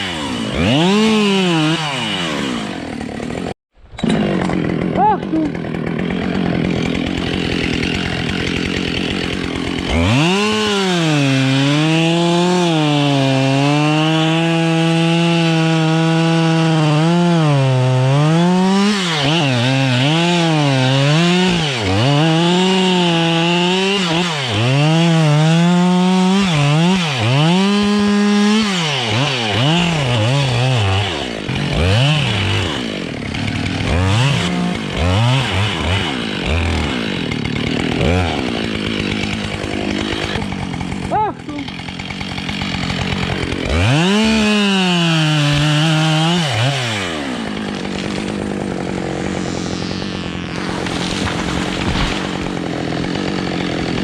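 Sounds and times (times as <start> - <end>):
chainsaw cutting tree trunk: 0.0 - 54.0.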